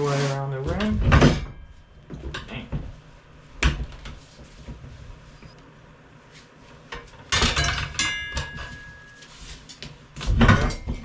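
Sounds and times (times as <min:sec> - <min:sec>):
metal clatter with ringing tone: 0:07.3 - 0:09.2.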